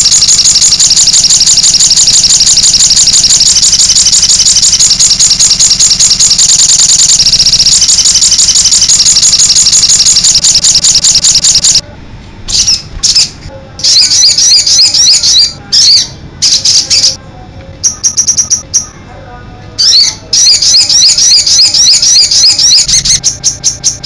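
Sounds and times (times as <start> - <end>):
songbird rapid high notes: 0.0 - 11.8
songbird twittering chirps: 0.0 - 11.8, 17.8 - 19.0.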